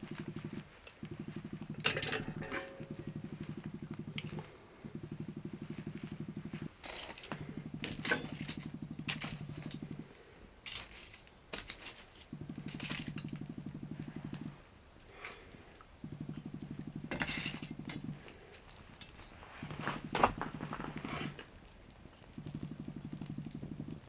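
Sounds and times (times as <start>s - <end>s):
low pulsing rumble: 0.0s - 10.0s, 16.0s - 18.3s
metal utensil clinking on pot: 1.8s - 2.9s.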